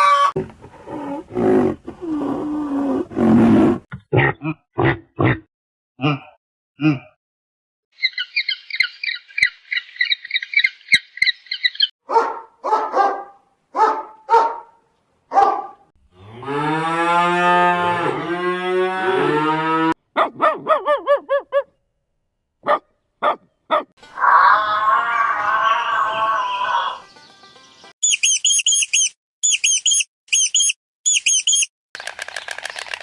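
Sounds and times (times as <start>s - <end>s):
dog-like barks: 12.0s - 15.9s, 20.1s - 21.7s, 22.6s - 24.0s
cow mooing: 16.1s - 20.0s
rapid high-pitched chirping: 28.0s - 31.7s.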